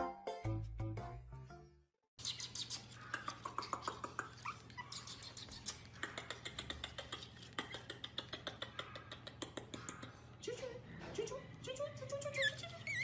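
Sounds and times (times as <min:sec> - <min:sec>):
dog whining: 0:04.3 - 0:05.8.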